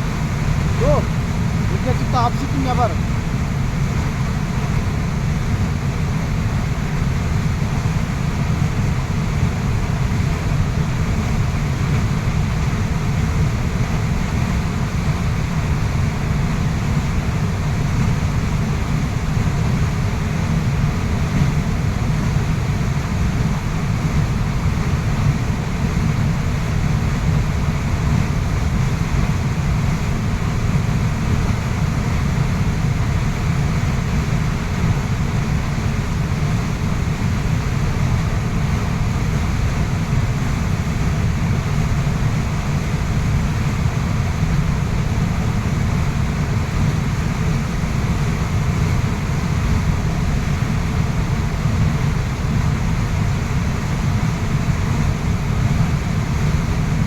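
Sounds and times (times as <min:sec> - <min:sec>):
waterfall rushing: 0:00.4 - 0:03.2.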